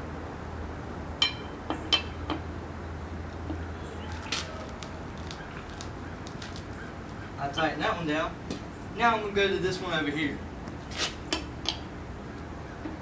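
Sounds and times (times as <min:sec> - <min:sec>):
lug wrench clinking on nut: 0:01.2 - 0:02.4.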